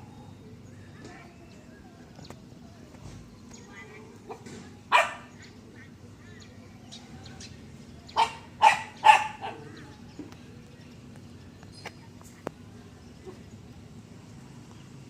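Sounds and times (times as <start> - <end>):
dog barking: 4.3 - 5.4, 8.2 - 9.8.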